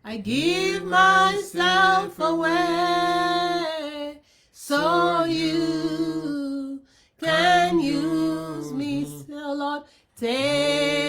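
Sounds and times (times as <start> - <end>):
person singing unaccompanied: 0.1 - 11.0.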